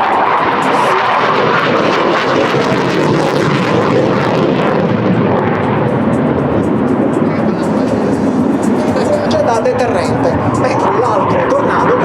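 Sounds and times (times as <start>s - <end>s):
jet making a low pass: 0.0s - 12.0s.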